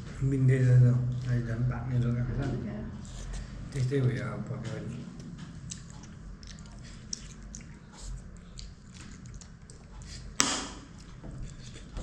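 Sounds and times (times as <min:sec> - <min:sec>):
chewing and lip-smacking: 0:04.7 - 0:12.0.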